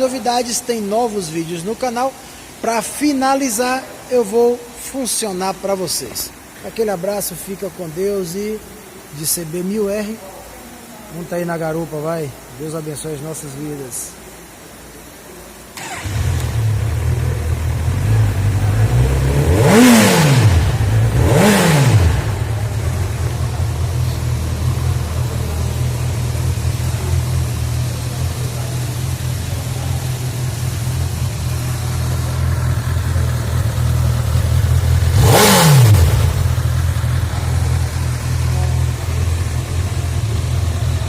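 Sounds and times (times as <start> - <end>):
motorcycle engine idling and revving: 15.8 - 41.0.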